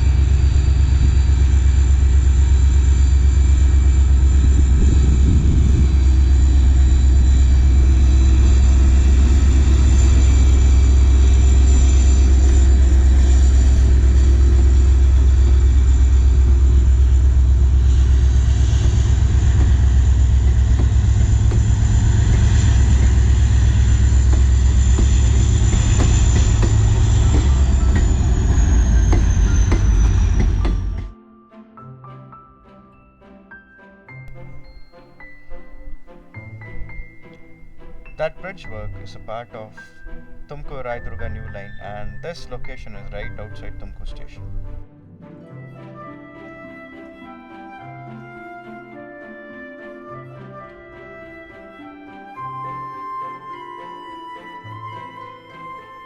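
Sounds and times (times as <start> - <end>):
rail clicks: 0.0 - 31.1, 34.3 - 44.8
thin high whine: 0.0 - 31.1, 34.3 - 44.8
train rumbling: 0.0 - 31.1, 34.3 - 44.9.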